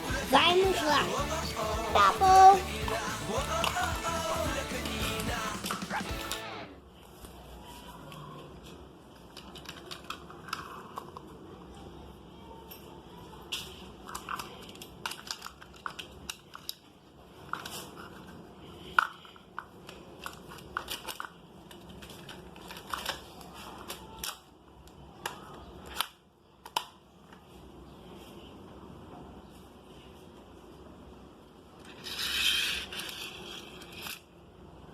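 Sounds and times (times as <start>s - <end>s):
toy pieces clicking and knocking: 9.2s - 11.5s, 13.4s - 24.5s, 31.8s - 34.3s.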